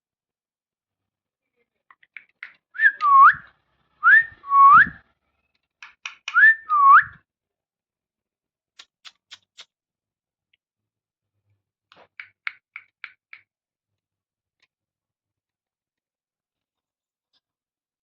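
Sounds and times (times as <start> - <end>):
parrot whistling: 2.8 - 5.0, 6.4 - 7.2.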